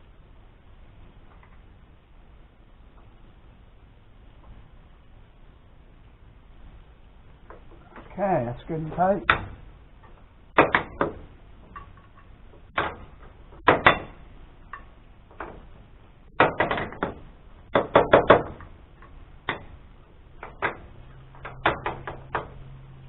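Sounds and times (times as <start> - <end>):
low steady hum: 0.0 - 23.0
tools knocking and clicking: 9.3 - 15.7, 16.4 - 19.8, 20.4 - 22.6.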